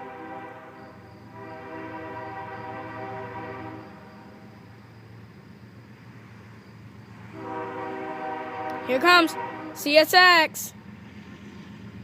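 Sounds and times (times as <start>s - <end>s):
locomotive air horn: 0.0s - 4.4s, 7.3s - 10.0s
low train rumble: 0.0s - 12.0s.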